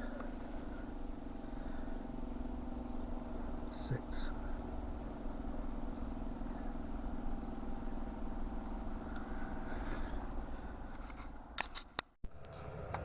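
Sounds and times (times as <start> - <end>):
air heater whirring hum: 0.0 - 11.6.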